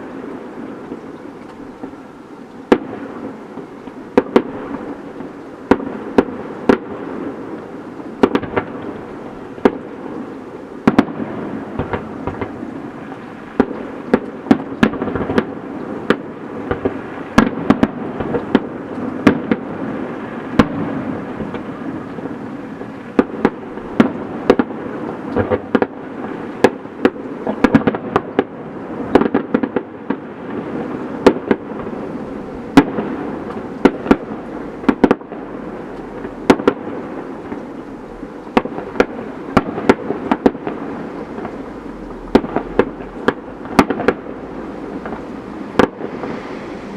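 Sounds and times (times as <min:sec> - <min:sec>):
fireworks crackle: 0:00.0 - 0:46.9
fireworks shells bursting: 0:30.8 - 0:46.9.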